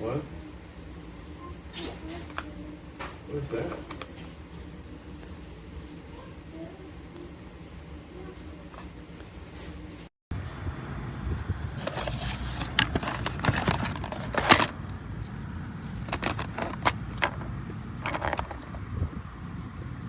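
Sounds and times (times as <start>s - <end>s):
small hard objects rattling: 11.8s - 15.0s, 15.7s - 18.8s.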